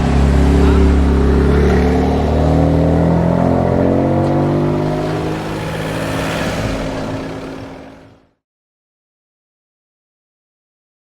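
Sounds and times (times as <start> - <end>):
car engine accelerating: 0.0 - 8.4.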